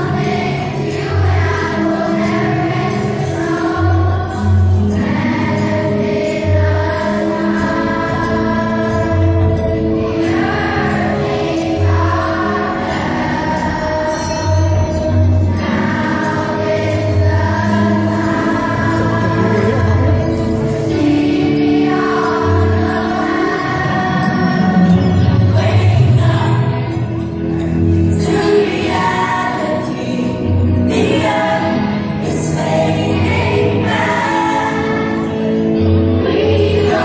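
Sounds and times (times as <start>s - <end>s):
children's choir singing: 0.0s - 37.0s
low held instrumental notes: 18.1s - 21.5s.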